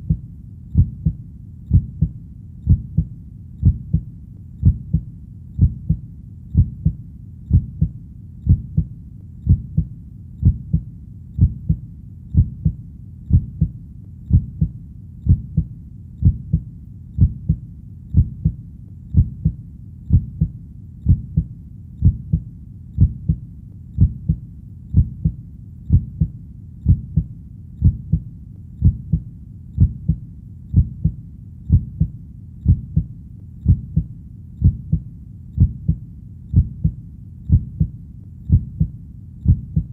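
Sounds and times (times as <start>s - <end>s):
heartbeat: 0.0s - 39.9s.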